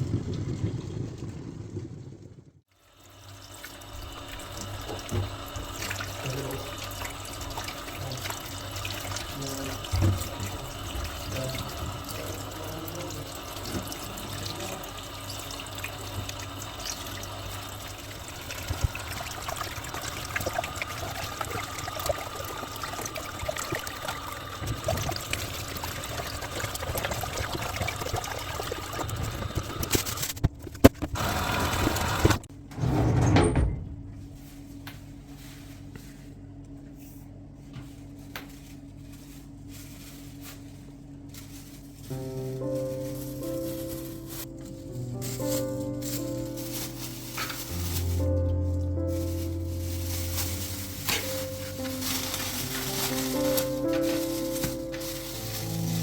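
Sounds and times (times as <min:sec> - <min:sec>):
running water: 0:00.0 - 0:30.2, 0:45.2 - 0:56.0.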